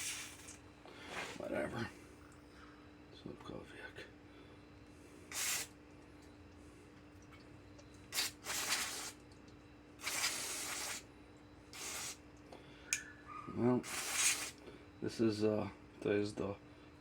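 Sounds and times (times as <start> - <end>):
aerosol spray hissing: 5.3 - 5.7, 10.0 - 11.0, 11.8 - 12.2, 13.8 - 14.6.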